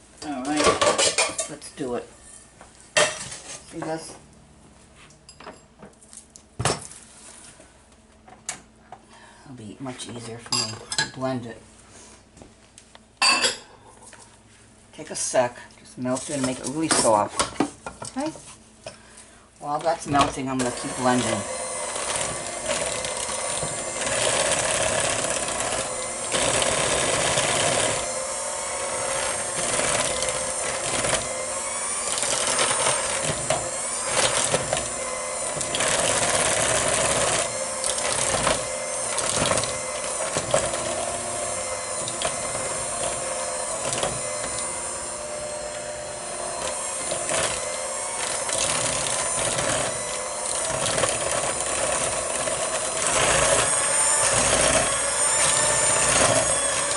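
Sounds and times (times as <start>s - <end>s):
electric hand mixer grinding butter: 16.1s - 17.2s, 19.6s - 56.9s.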